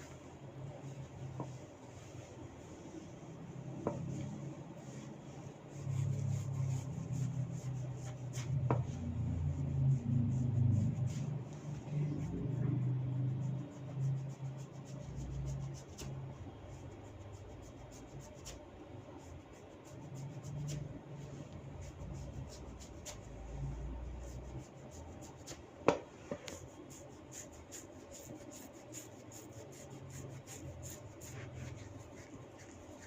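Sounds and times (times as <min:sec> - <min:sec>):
hands rubbing through hair: 0:00.0 - 0:12.4, 0:26.2 - 0:33.0.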